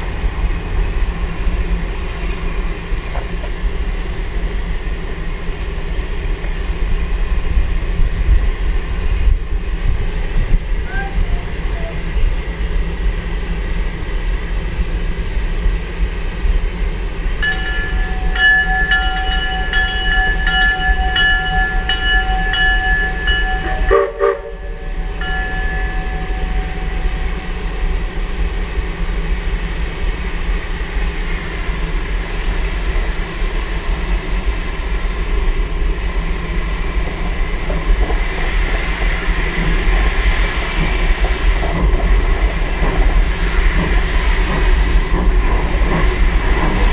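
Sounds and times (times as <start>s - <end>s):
steam locomotive rumble and rail clatter: 0.0s - 46.9s
steam whistle: 22.4s - 26.8s.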